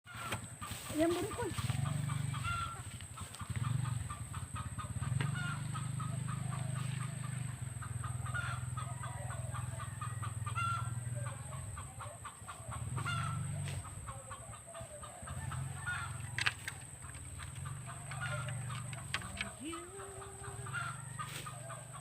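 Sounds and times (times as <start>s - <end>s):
chickens clucking: 0.1s - 22.0s.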